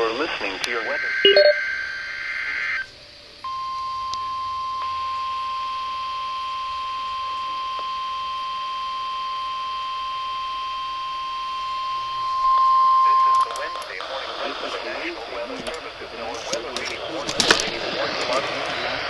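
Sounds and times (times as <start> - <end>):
steady warning alarm tone: 0.9 - 2.8, 3.4 - 14.6.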